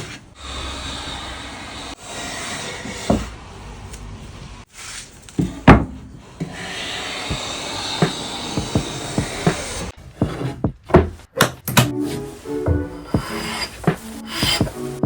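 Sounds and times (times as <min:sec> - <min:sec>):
sharp wooden knocks: 0:05.4 - 0:06.1, 0:07.2 - 0:11.9, 0:13.1 - 0:14.8
scraping rub on wood: 0:06.4 - 0:11.0, 0:12.7 - 0:14.9.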